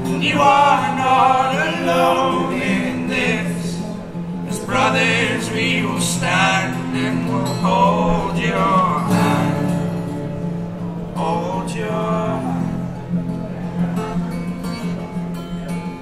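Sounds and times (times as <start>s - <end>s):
men singing in harmony: 0.0s - 10.0s, 11.2s - 12.9s
strummed acoustic guitar: 0.0s - 16.0s.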